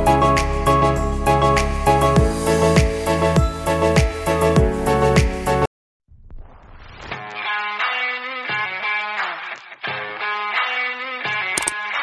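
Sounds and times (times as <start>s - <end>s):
guitar-led background music: 7.2s - 12.0s.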